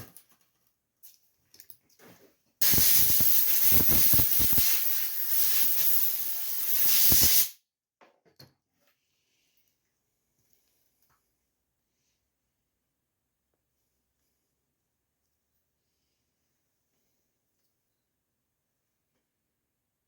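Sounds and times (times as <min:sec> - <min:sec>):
pressurized spray hissing: 0:02.6 - 0:07.5.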